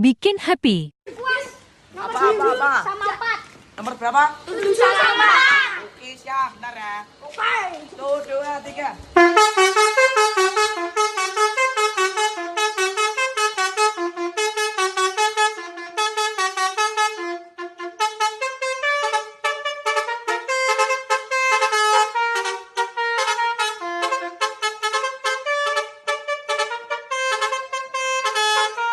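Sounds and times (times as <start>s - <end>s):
bus horn tooting melody: 9.2s - 28.9s.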